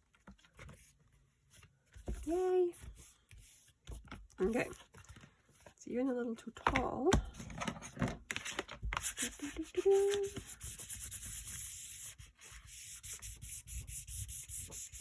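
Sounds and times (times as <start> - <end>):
rubbing on paper: 2.2 - 4.8, 9.0 - 15.0.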